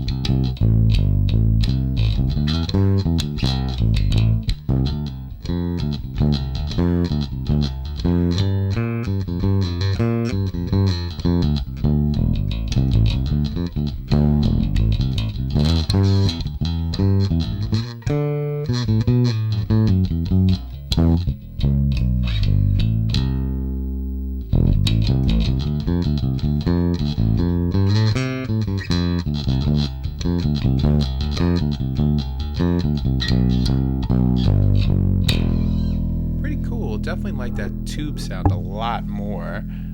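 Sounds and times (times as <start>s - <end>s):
bass guitar plucked notes: 0.0s - 39.9s.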